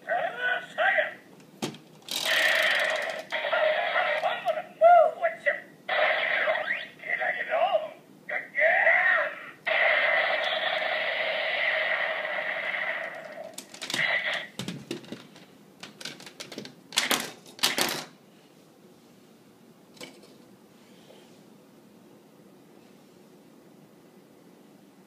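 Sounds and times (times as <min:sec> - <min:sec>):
plastic clicks and clacks: 0:13.5 - 0:18.1.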